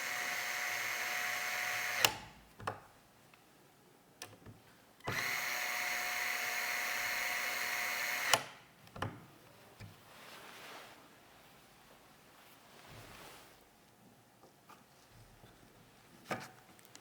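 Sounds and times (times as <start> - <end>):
electric screwdriver whirring: 0.0 - 2.2, 5.1 - 8.5.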